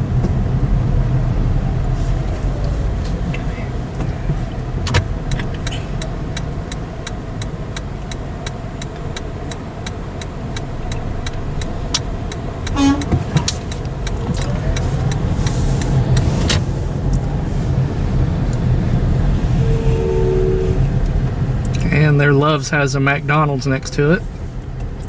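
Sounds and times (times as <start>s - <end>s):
car road noise rumble: 0.0s - 25.0s
short sharp squeak: 12.7s - 13.5s, 19.4s - 20.9s.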